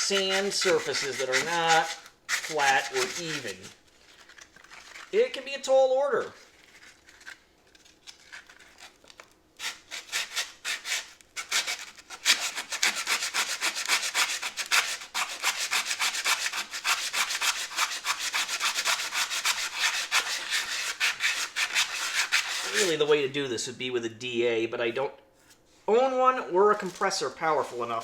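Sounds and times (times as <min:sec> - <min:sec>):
sandpaper rasping on metal: 0:00.0 - 0:03.8, 0:09.6 - 0:23.0.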